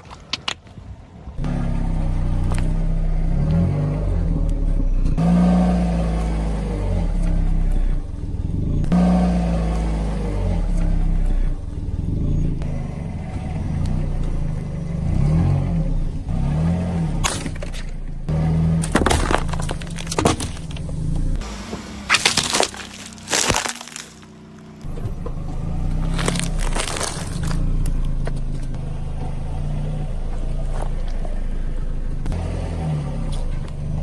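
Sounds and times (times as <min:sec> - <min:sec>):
car engine revving: 0:01.4 - 0:34.0
object crushed under wheel: 0:18.8 - 0:20.9, 0:21.7 - 0:25.1, 0:26.0 - 0:27.7.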